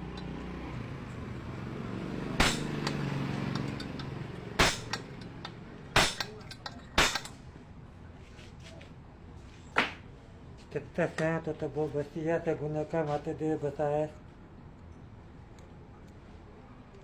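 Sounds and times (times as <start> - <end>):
metal tools knocking: 2.4 - 7.4.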